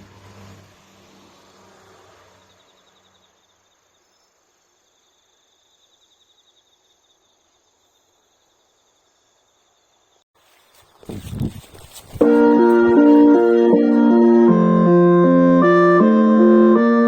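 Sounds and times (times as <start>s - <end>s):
passing car engine: 0.0s - 3.2s
rural ambience: 0.0s - 15.7s
faint insect trill: 0.8s - 12.0s.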